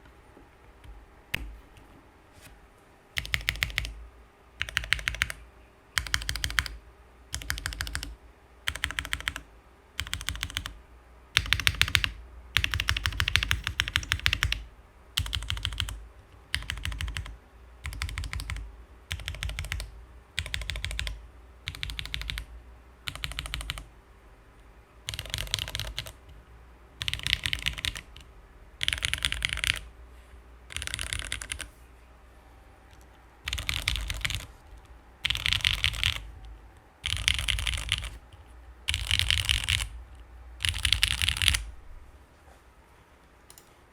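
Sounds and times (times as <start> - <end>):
mechanical keyboard typing: 3.2 - 4.0, 4.6 - 5.4, 6.0 - 10.8, 11.4 - 23.9, 25.1 - 26.3, 27.0 - 29.9, 30.7 - 31.7, 32.9 - 34.6, 35.2 - 36.3, 37.0 - 40.0, 40.6 - 41.7, 43.5 - 43.7.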